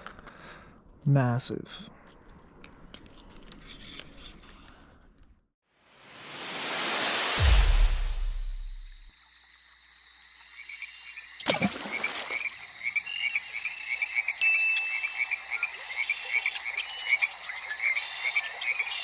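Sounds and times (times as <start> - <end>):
loud whoosh or rustle: 5.8 - 9.1
high insect trill: 7.8 - 19.0
frogs chirping: 9.1 - 19.0.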